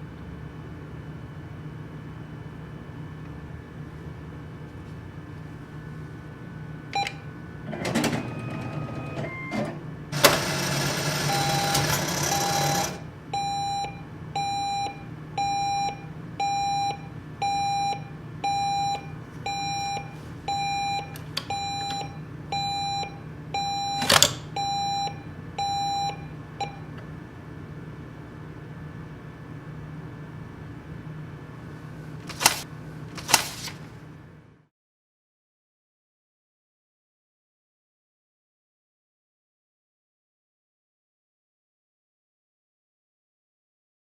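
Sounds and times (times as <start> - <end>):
low machine hum: 0.0 - 34.6
dispenser whirring and rattling: 6.9 - 13.2
keypad beep: 7.0 - 26.9.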